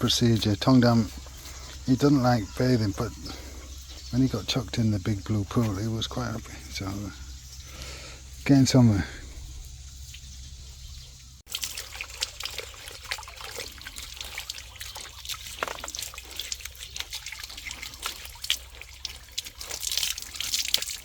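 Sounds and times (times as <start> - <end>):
water splashing and trickling: 0.0 - 21.0.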